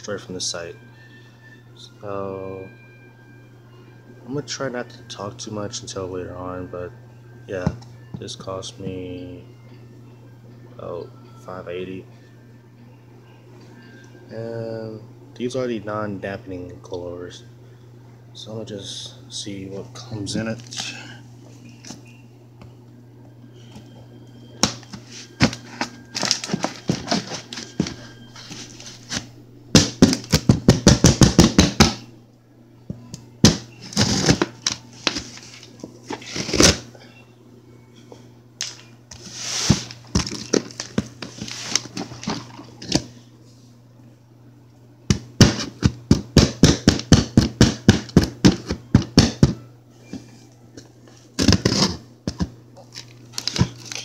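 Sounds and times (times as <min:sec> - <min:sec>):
steady low hum: 0:00.0 - 0:54.0
packing tape tearing off: 0:53.0 - 0:54.0.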